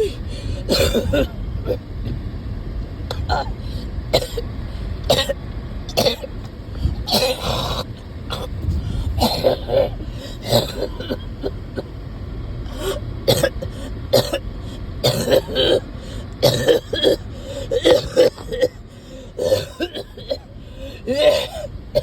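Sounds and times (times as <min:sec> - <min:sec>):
person coughing: 0:00.0 - 0:01.8, 0:09.2 - 0:11.6, 0:15.0 - 0:15.8, 0:16.4 - 0:18.8, 0:19.4 - 0:20.5, 0:21.1 - 0:22.0
person clearing throat: 0:00.7 - 0:01.4, 0:19.4 - 0:20.4.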